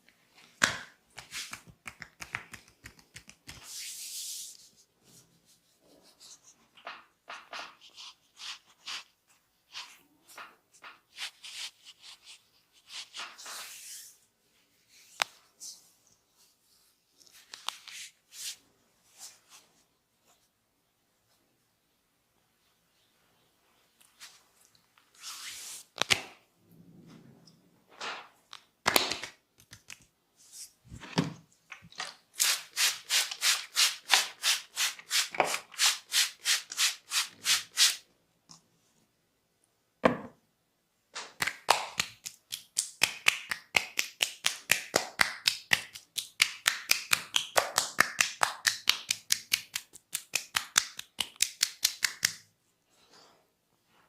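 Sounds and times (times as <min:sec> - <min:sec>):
hands rubbing over hair and skin: 0:01.2 - 0:04.9, 0:32.4 - 0:38.0.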